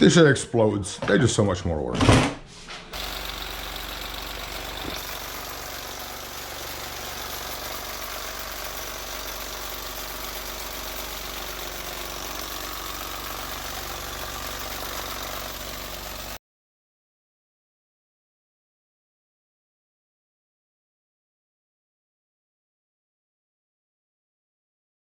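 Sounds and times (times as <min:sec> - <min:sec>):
reciprocating saw motor drone: 0:03.0 - 0:16.4.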